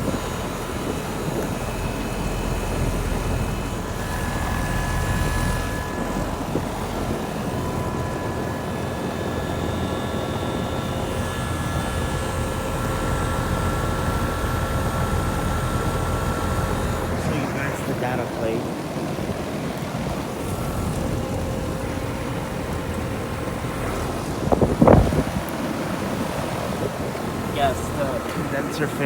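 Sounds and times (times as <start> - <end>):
faint steady high tones: 0.0 - 18.7, 27.1 - 29.0
compressor hum: 0.0 - 29.0
condenser fan rushing: 0.0 - 29.0.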